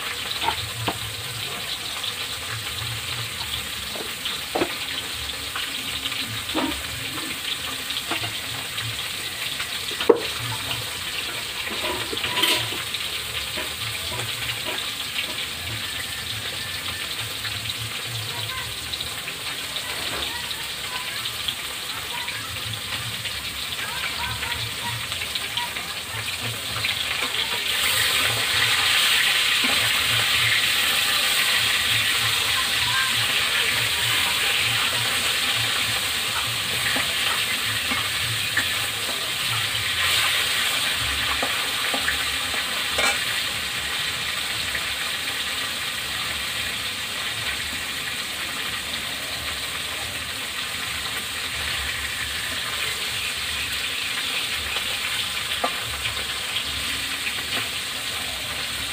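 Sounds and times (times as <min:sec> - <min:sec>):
food sizzling in hot oil: 0:00.0 - 0:58.9.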